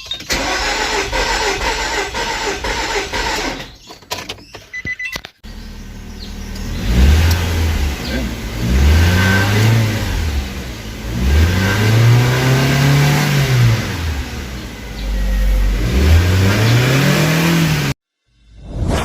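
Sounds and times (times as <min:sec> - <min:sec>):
car engine revving: 0:05.5 - 0:18.0.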